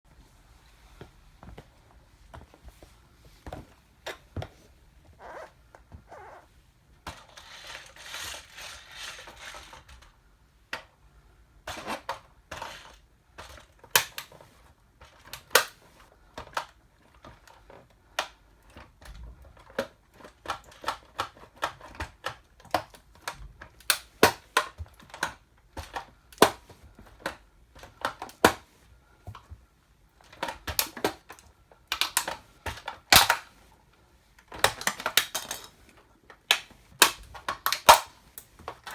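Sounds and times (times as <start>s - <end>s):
plastic toy cracking and snapping: 11.7s - 14.4s, 15.2s - 15.8s, 16.4s - 28.6s, 30.2s - 33.6s, 34.4s - 38.9s.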